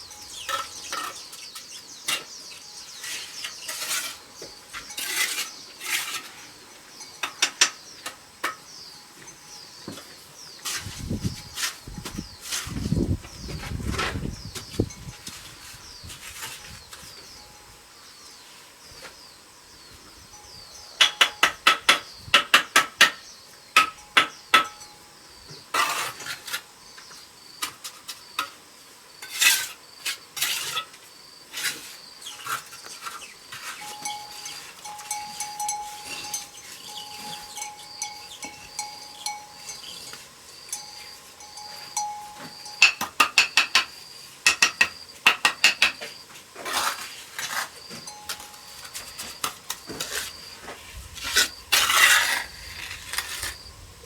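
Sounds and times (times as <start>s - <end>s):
hand tools tapping metal: 7.0s - 10.9s, 32.4s - 46.8s, 47.5s - 52.2s
high chirping: 33.8s - 42.9s.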